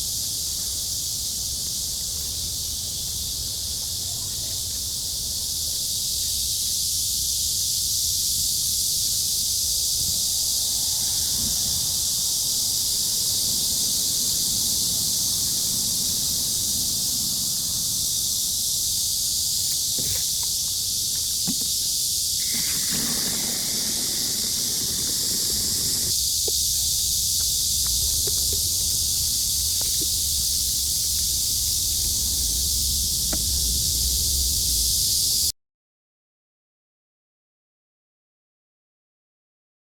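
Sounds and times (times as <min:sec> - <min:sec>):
cicadas chorus: 0:00.0 - 0:35.5
low rumble: 0:30.8 - 0:35.3.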